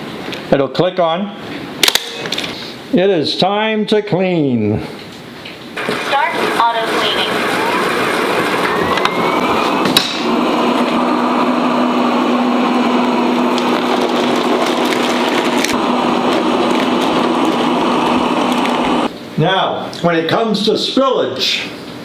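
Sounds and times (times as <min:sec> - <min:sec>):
robot vacuum running: 0:05.8 - 0:19.1.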